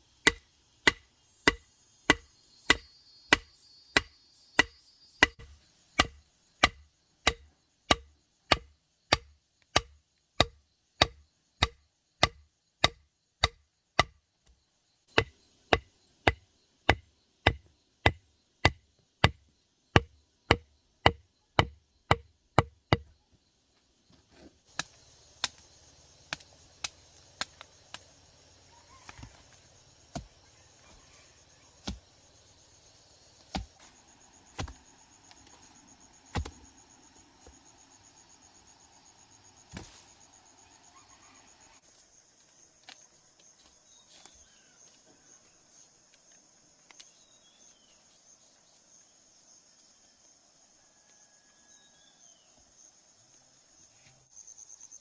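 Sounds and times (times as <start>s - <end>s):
background hiss: 23.5s - 50.8s.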